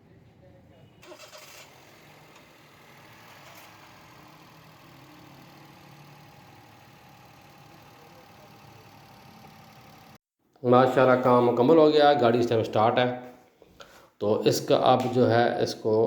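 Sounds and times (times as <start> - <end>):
car engine idling: 1.0 - 10.2.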